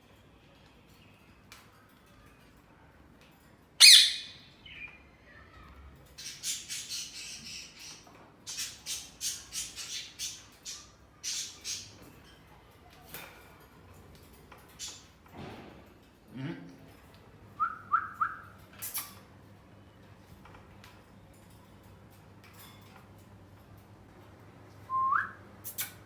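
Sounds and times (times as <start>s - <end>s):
parrots squawking: 3.8s - 4.4s.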